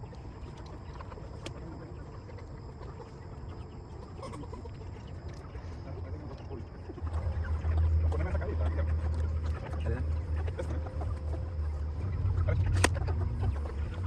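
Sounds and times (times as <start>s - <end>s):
chickens clucking: 0.0s - 14.0s
low rumble: 6.9s - 14.0s.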